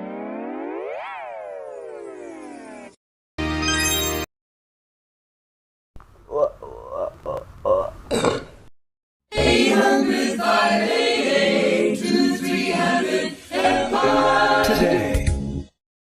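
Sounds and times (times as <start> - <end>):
choir singing a cappella: 9.3 - 15.5.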